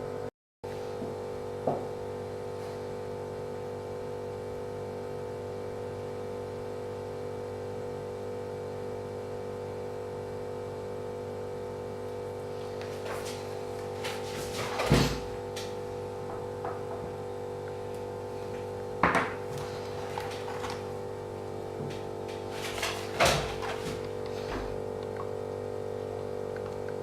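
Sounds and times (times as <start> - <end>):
steady hum of held tones: 23.8 - 27.0.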